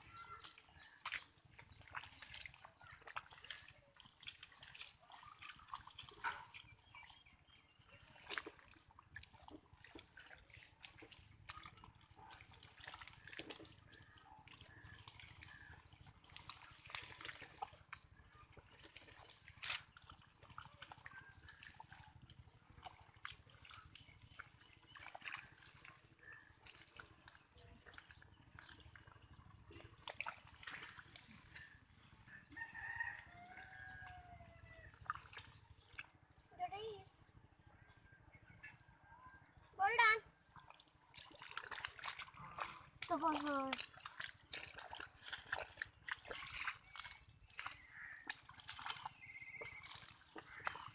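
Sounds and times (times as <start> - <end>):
small birds chirping: 0.0 - 10.1, 11.1 - 41.2, 45.5 - 50.9
hands splashing in muddy water: 0.0 - 36.2, 40.4 - 50.9
rooster crowing: 32.4 - 34.8.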